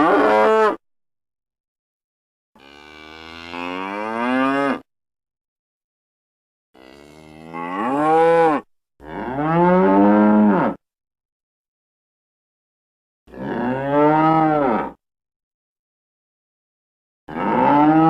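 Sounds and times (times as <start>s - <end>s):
cow mooing: 0.0s - 0.8s, 2.6s - 4.9s, 6.8s - 10.8s, 13.3s - 15.0s, 17.3s - 18.0s.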